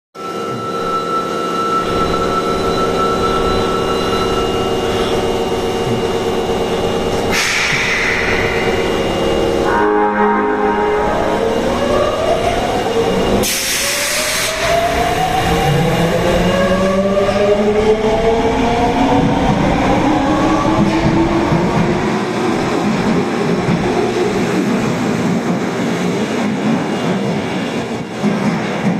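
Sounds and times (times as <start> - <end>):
subway car electrical whine: 0.2 - 28.9
wheels rumbling on rail: 0.3 - 28.9
loud hiss: 7.3 - 9.5.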